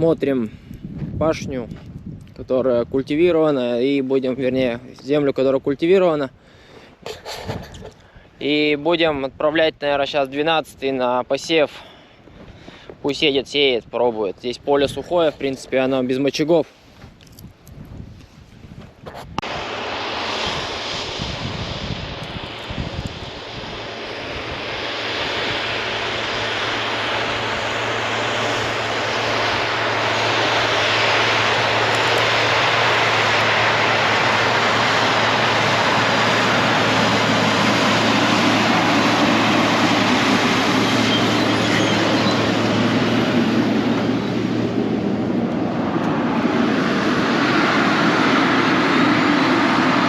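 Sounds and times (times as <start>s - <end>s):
low hum: 19.3s - 50.0s
tractor engine running: 25.0s - 47.0s.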